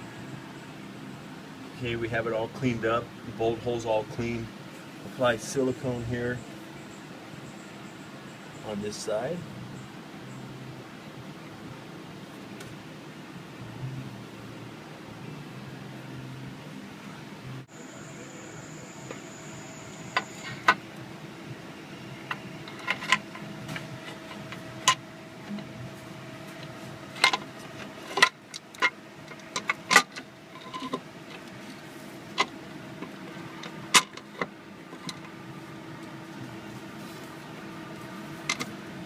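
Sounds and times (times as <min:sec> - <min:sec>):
steady low hum: 0:00.0 - 0:39.0
tools and metal parts clicking: 0:22.3 - 0:23.4, 0:27.2 - 0:35.3.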